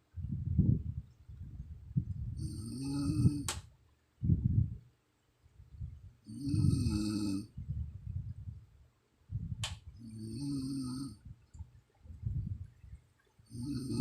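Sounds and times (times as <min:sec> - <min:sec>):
woman snoring: 0:02.4 - 0:03.5, 0:06.3 - 0:07.5, 0:10.0 - 0:11.2, 0:13.5 - 0:14.0
sharp click: 0:03.4 - 0:03.7, 0:09.6 - 0:09.8.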